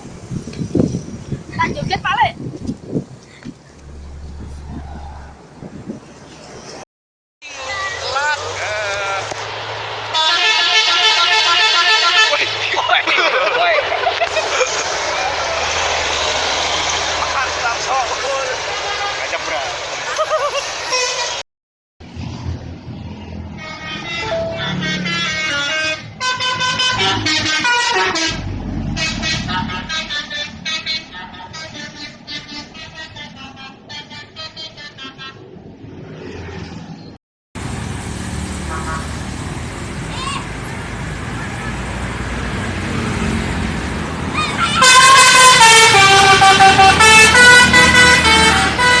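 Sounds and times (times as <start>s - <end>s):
bus engine rumbling: 0.0s - 6.8s, 7.4s - 21.4s, 22.0s - 49.0s
multi-tone air horn tune: 10.1s - 12.6s, 23.6s - 30.3s, 44.8s - 49.0s.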